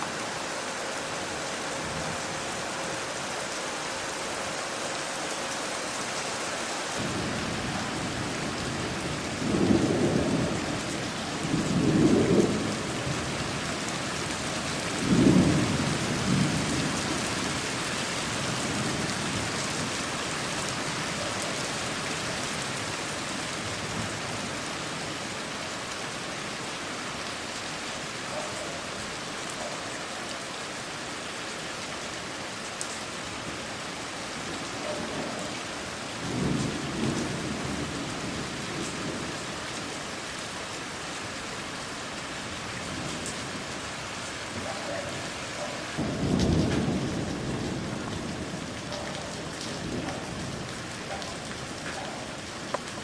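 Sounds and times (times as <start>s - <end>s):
steady rain hissing: 0.0s - 53.0s
thunder rumbling: 7.0s - 17.6s, 46.0s - 53.0s.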